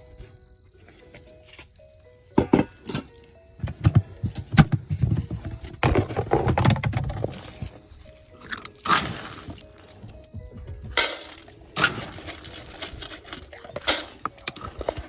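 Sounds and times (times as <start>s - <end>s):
knocks and clatters: 2.4s - 7.8s
dry food rustling and pouring: 11.2s - 15.0s.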